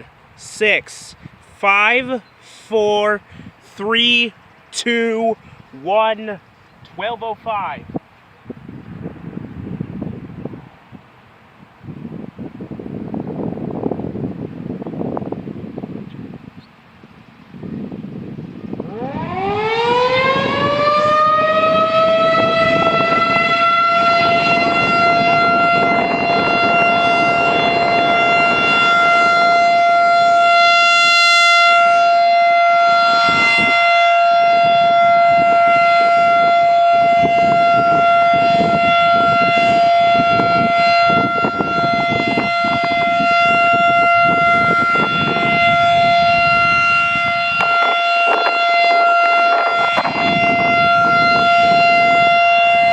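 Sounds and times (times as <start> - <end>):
warning siren wailing: 18.5 - 52.9.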